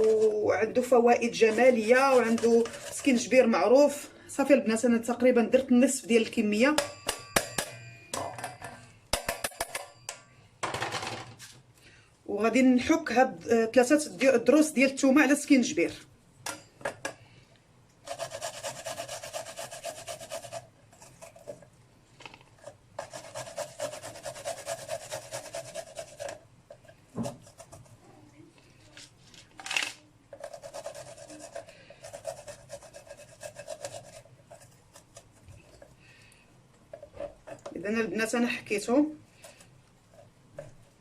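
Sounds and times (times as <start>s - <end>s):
garlic rasping on hand grater: 1.4s - 3.3s, 18.1s - 21.5s, 23.0s - 26.4s, 30.4s - 35.9s.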